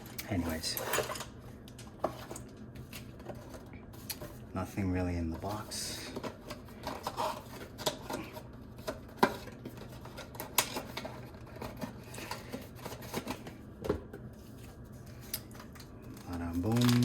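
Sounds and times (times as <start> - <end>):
plastic packaging clicks and rustles: 6.1 - 13.6, 15.1 - 17.0.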